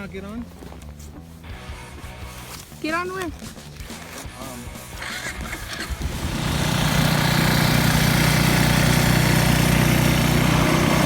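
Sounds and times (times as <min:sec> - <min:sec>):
atv engine running: 0:04.8 - 0:11.0.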